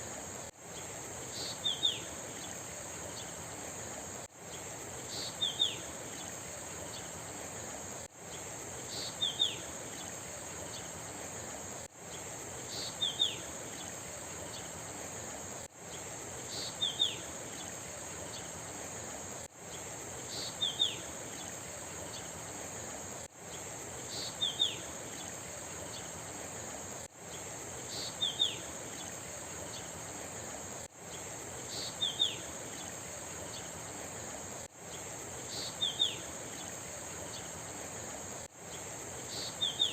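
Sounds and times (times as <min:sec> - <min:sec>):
high insect drone: 0:00.0 - 0:39.9
rushing water hiss: 0:00.0 - 0:39.9
bird chirping: 0:27.3 - 0:29.9, 0:31.1 - 0:33.7, 0:34.9 - 0:37.5, 0:38.7 - 0:39.9.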